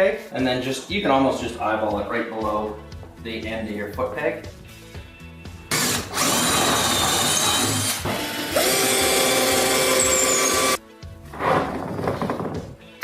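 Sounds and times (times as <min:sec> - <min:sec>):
power drill running: 0:05.7 - 0:10.8.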